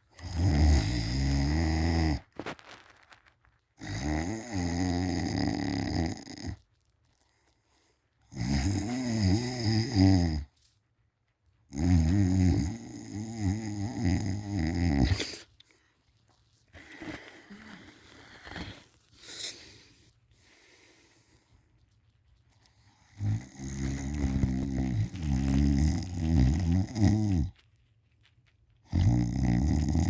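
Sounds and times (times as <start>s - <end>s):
quiet breathing: 0.0s - 10.8s, 11.8s - 28.2s
person snoring loudly: 0.2s - 2.3s, 3.8s - 6.6s, 8.3s - 10.5s, 11.7s - 15.4s, 23.2s - 27.5s, 28.9s - 30.0s.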